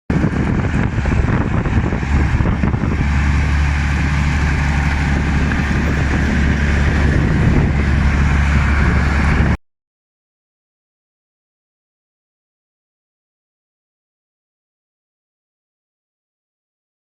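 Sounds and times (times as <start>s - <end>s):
engine rumbling: 0.1s - 9.6s
rushing noise: 0.1s - 9.6s.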